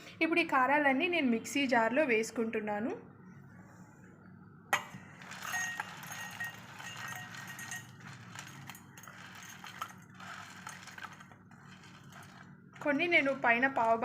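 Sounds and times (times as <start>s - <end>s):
crunchy pieces clattering into jar: 5.2s - 14.0s.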